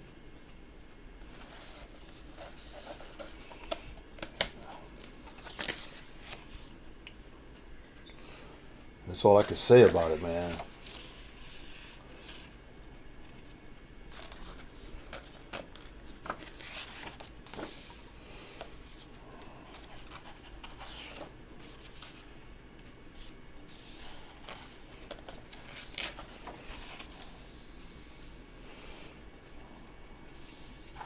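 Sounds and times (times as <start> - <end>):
book pages turning: 1.3 - 6.8, 9.2 - 12.5, 13.3 - 18.0, 18.6 - 22.3, 23.2 - 27.6.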